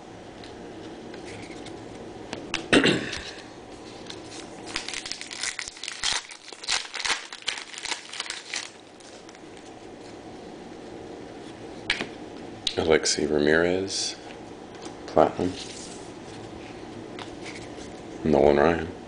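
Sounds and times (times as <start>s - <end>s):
card pack wrapper tearing: 4.1s - 9.4s.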